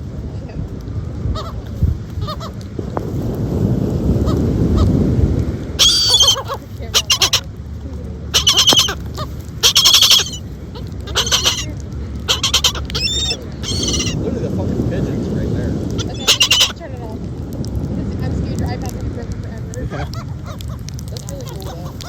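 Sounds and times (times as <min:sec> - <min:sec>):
low rumble: 0:00.0 - 0:22.0
gulls squawking: 0:01.3 - 0:02.6, 0:04.1 - 0:05.0, 0:05.7 - 0:07.5, 0:08.3 - 0:14.2, 0:15.9 - 0:16.8, 0:19.7 - 0:22.0.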